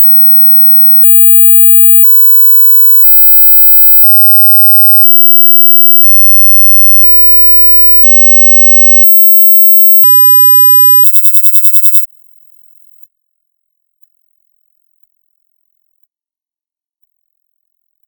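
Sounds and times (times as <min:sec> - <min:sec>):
electronic test tone beeps: 0:00.0 - 0:12.1.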